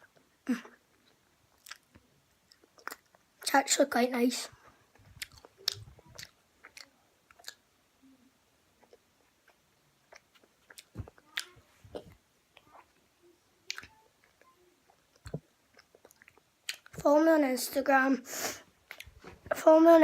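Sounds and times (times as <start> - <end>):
chewing mouth sounds: 1.6 - 1.8, 5.0 - 7.6, 15.1 - 17.0.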